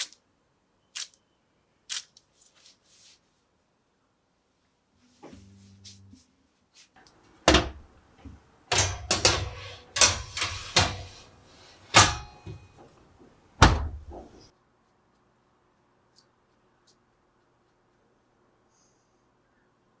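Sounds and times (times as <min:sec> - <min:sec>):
sharp knocks and heavy thuds: 0:13.6 - 0:14.5.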